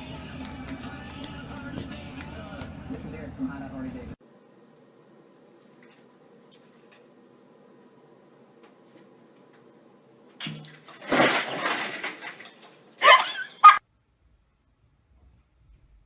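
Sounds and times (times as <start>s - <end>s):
crash with clatter: 10.4s - 12.7s.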